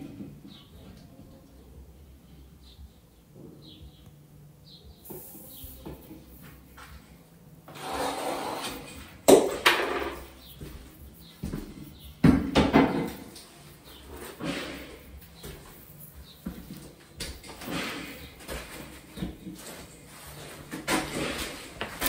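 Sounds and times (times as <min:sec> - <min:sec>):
scraping and rubbing: 0:05.0 - 0:22.0.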